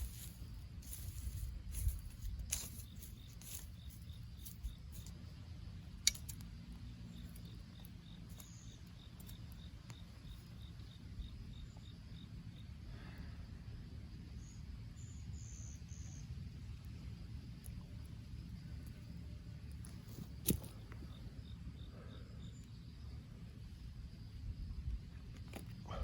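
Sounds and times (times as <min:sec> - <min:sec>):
insect chirping: 0:00.0 - 0:26.0
low rumbling background: 0:00.0 - 0:26.0
sharp clicks: 0:06.0 - 0:06.4.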